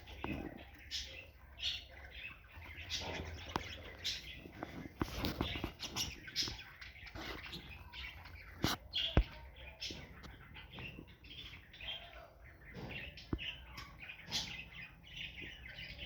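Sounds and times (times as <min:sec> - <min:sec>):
parrots chirping: 0:00.0 - 0:16.0.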